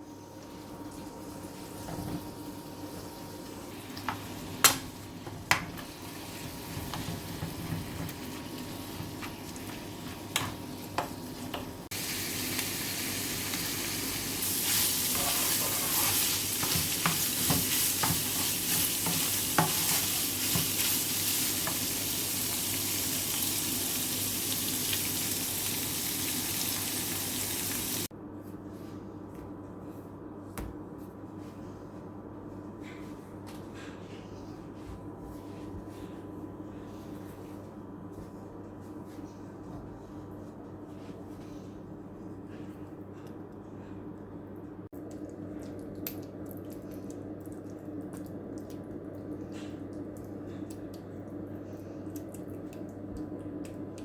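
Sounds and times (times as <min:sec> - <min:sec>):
food sizzling in a pan: 0:08.2 - 0:28.1.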